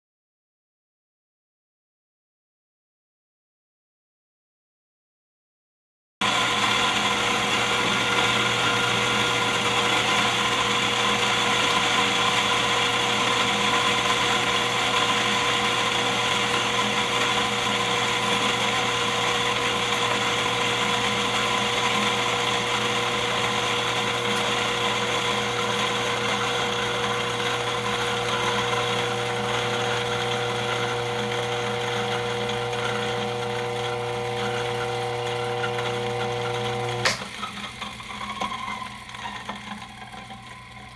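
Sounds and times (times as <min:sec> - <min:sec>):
coffee machine humming: 0:06.2 - 0:40.9.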